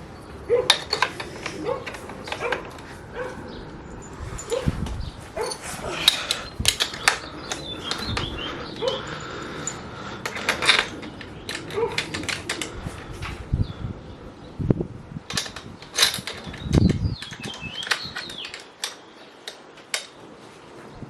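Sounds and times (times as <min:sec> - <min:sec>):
dog barking: 0:00.5 - 0:00.8, 0:01.6 - 0:03.5, 0:08.8 - 0:09.0
sharp clicks and knocks: 0:00.6 - 0:13.4, 0:15.3 - 0:20.2.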